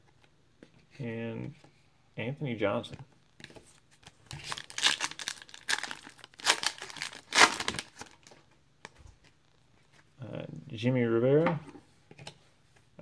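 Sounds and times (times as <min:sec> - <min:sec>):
wrapper tearing and crinkling: 0:04.2 - 0:08.3.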